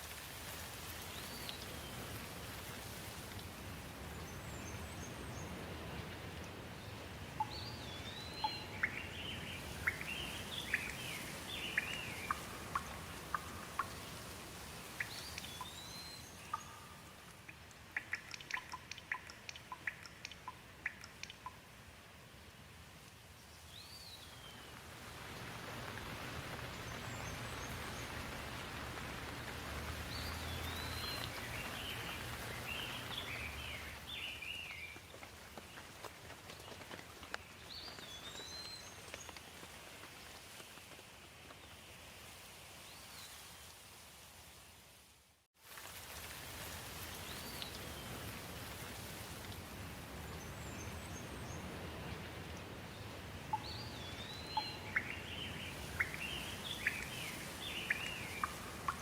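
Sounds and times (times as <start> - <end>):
steady rain falling: 0.0 - 59.0
birds chirping: 7.4 - 14.2, 26.6 - 35.0, 53.5 - 59.0.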